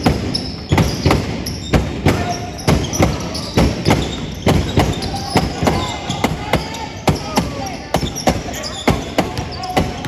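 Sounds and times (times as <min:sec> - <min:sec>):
basketball bouncing on wooden floor: 0:00.0 - 0:05.9.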